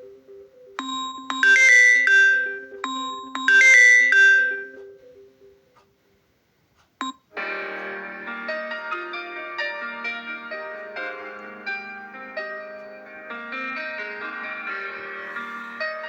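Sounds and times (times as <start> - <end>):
keyboard-like ringtone melody: 0.0 - 5.8, 7.0 - 16.0
bright chiming ringtone: 0.8 - 5.0.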